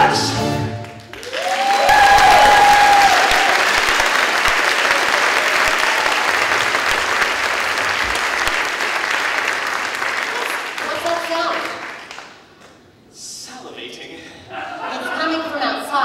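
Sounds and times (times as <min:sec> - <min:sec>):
audience applauding: 0:00.8 - 0:12.4.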